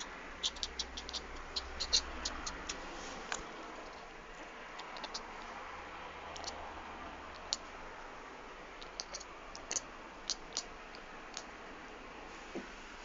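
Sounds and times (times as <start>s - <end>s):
kitten making high clicks: 0.0s - 2.8s, 4.8s - 5.3s, 8.8s - 11.5s.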